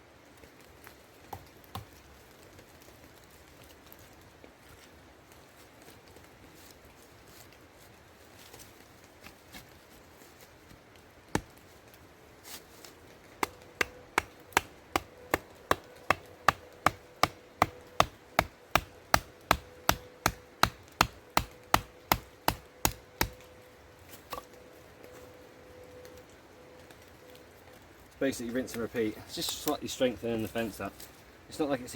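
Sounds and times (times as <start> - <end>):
tool striking wood: 13.4 - 23.4.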